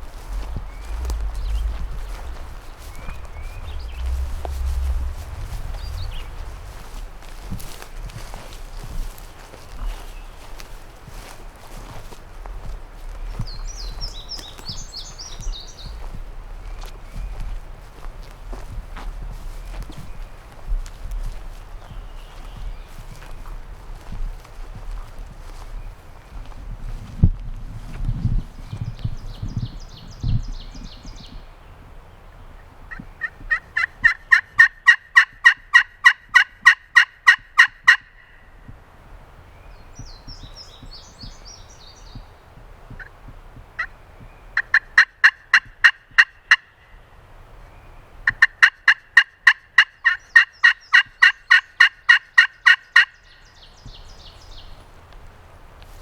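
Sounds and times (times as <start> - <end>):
turkey call hen yelps: 33.2 - 38.4.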